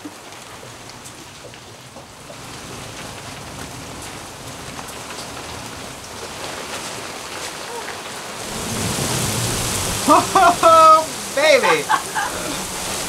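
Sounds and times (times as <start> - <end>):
rain falling: 0.0 - 13.0
raindrop ticks: 0.0 - 13.0.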